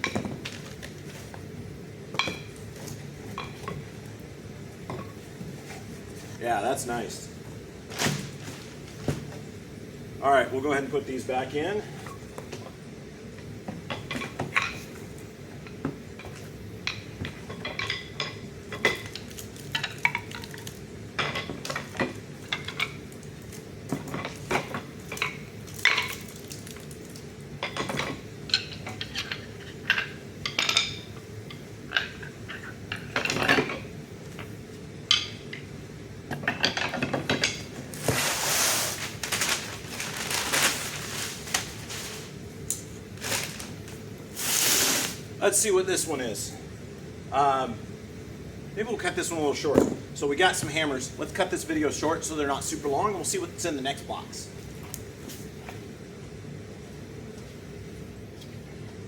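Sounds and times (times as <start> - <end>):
rustling: 37.8 - 42.5, 43.1 - 45.2.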